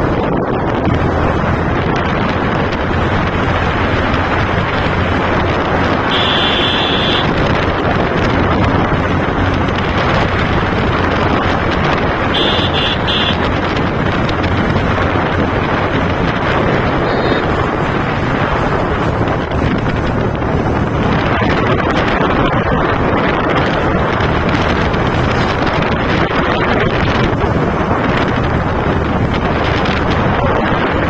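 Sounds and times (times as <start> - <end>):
wind buffeting microphone: 0.0 - 6.3, 7.0 - 31.0
motorcycle engine drone: 0.0 - 31.0
high beeping tone: 17.0 - 17.5.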